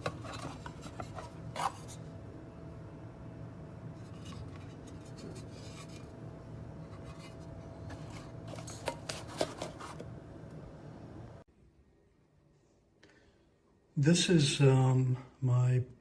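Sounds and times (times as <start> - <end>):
hardware parts rubbing and scraping: 0.0 - 2.2, 4.0 - 10.1
low steady hum: 0.0 - 16.0.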